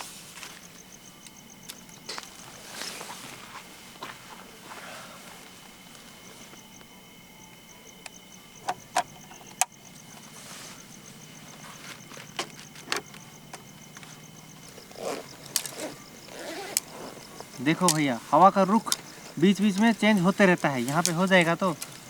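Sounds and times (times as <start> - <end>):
faint high pulsing ticking: 6.2 - 22.0.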